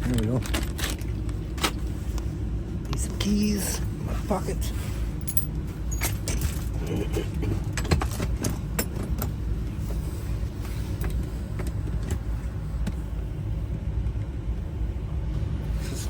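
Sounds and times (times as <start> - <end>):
low rumble: 0.0 - 16.0
keys jangling: 5.2 - 6.8.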